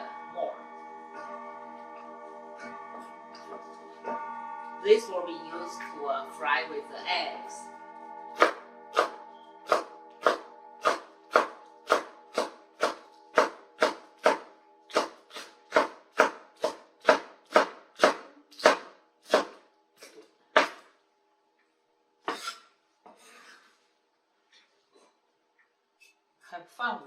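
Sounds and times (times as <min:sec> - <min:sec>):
knife chopping on cutting board: 0:08.4 - 0:20.8
short scrape: 0:22.3 - 0:23.7.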